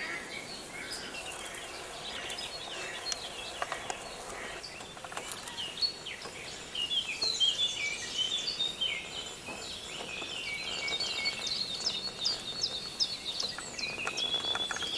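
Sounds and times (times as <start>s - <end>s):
forest birds chirping and singing: 0.0s - 14.9s.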